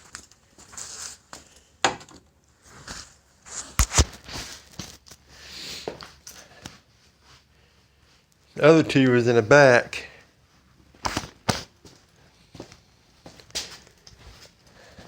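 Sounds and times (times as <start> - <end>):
rustling and scraping: 0.0 - 1.7, 2.6 - 7.5.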